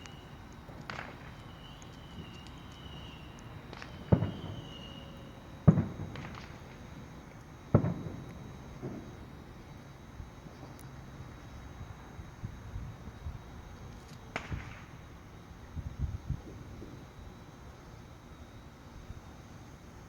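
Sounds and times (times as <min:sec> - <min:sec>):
faint firework pops: 0:00.0 - 0:09.2, 0:13.9 - 0:15.0
fireworks bangs: 0:00.6 - 0:09.3, 0:14.3 - 0:15.1.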